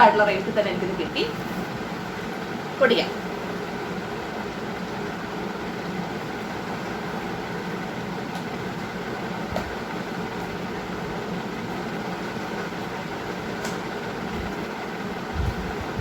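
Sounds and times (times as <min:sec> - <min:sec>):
mechanical background hum: 0:00.0 - 0:16.0.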